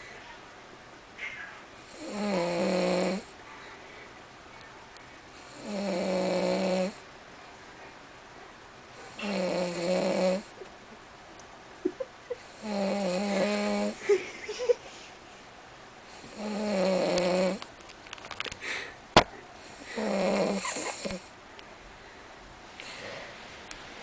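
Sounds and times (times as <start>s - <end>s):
buzzing snores: 1.8s - 3.3s, 5.4s - 7.0s, 9.0s - 10.5s, 12.4s - 14.0s, 16.1s - 17.6s, 19.7s - 21.3s.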